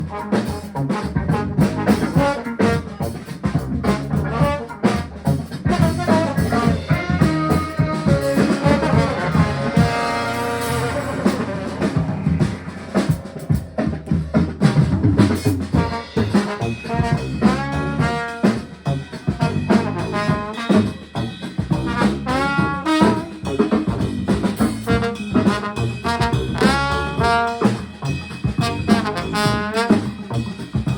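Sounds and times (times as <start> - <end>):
brass horns playing melody: 0.0 - 13.5, 15.7 - 23.8, 24.4 - 30.9
drum kit steady beat: 0.0 - 30.9.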